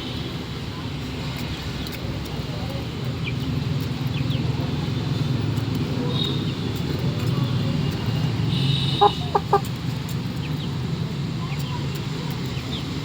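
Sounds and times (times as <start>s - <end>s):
rooster clucking: 9.0s - 9.8s.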